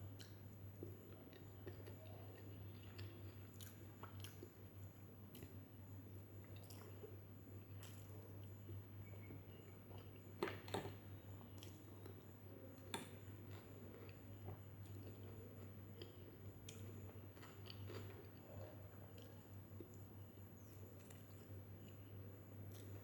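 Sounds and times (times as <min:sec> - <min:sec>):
person chewing food: 0:00.0 - 0:23.0.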